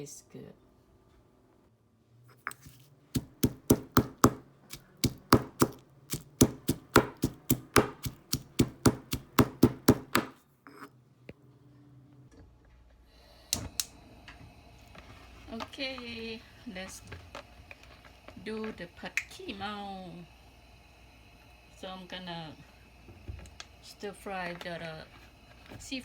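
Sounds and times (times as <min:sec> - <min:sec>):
hard smashing strikes: 0:03.2 - 0:10.3
loud knock: 0:05.0 - 0:10.3.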